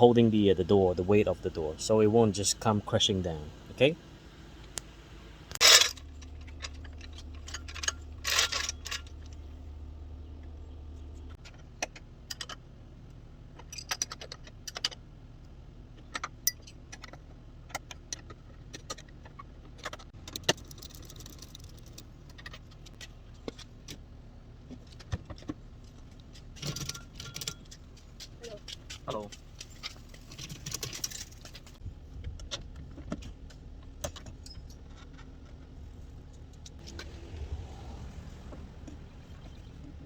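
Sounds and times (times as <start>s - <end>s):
metal tools clinking: 5.6s - 9.5s, 25.9s - 31.8s, 34.1s - 35.6s
low hum: 34.4s - 40.0s.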